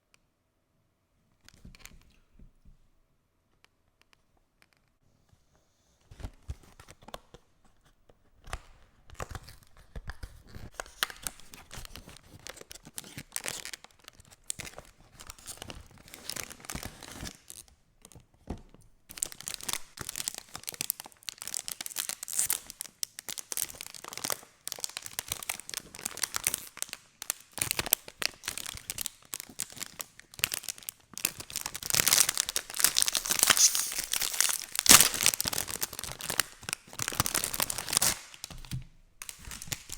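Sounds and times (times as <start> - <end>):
food packaging crinkling and tearing: 9.1 - 17.6, 19.1 - 39.9.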